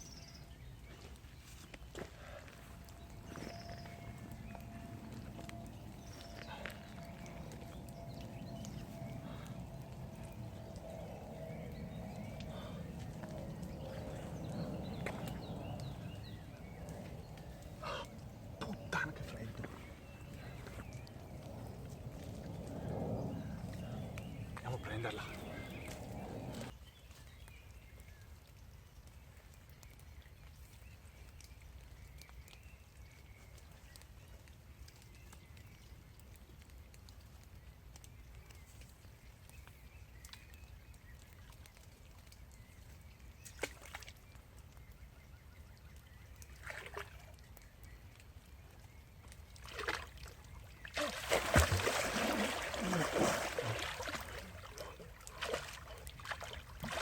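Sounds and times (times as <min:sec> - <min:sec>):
faint low rumble: 0:00.0 - 0:26.8
water sloshing and splashing: 0:01.0 - 0:26.7, 0:43.2 - 0:44.6, 0:46.3 - 0:57.0.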